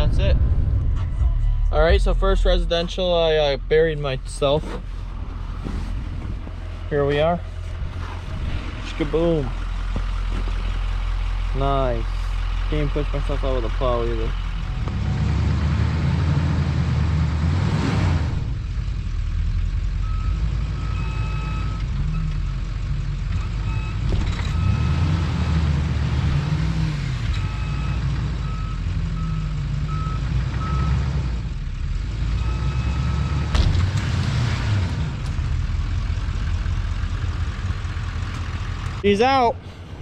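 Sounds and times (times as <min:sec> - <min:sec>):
truck engine revving: 0:00.0 - 0:40.0
reversing alarm beeping: 0:20.0 - 0:22.3, 0:23.4 - 0:25.2, 0:27.4 - 0:31.0, 0:32.4 - 0:33.5.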